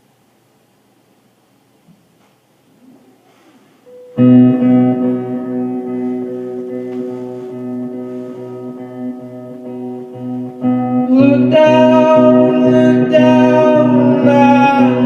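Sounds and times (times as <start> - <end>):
held chord: 3.9 - 15.0.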